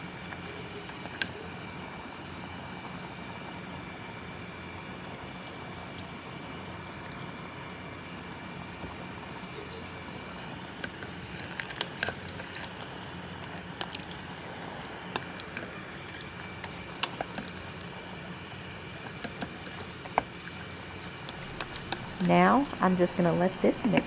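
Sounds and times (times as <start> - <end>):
pressure cooker hissing: 10.4 - 24.0.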